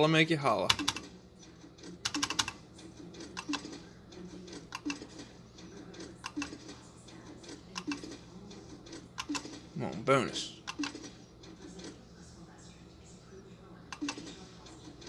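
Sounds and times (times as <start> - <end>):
slot machine buttons clicking: 0.6 - 1.2, 1.8 - 5.2, 5.9 - 8.2, 9.2 - 9.6, 10.6 - 11.2, 13.9 - 14.4.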